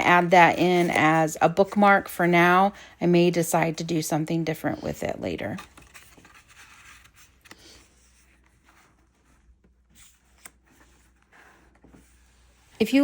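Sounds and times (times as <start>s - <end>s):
paper rustling: 0.0s - 2.3s, 4.8s - 12.8s.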